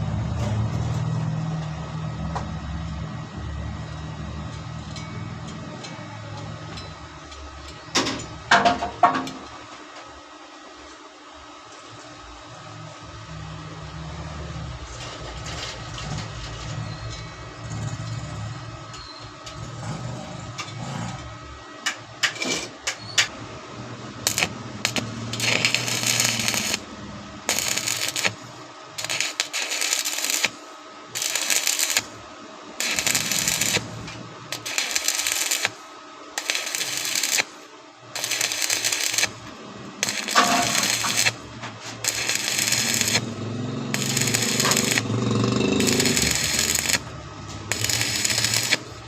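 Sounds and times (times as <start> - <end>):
arc welding crackle: 14.8 - 16.8, 21.8 - 49.0.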